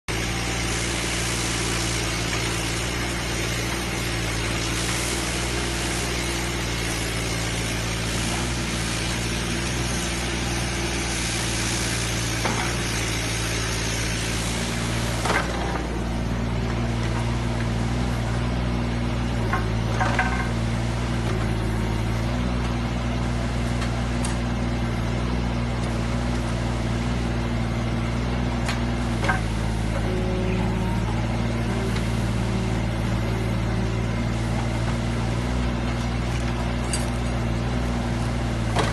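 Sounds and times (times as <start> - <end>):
excavator diesel engine running: 0.0 - 38.9
hiss: 0.1 - 15.9, 31.0 - 35.8.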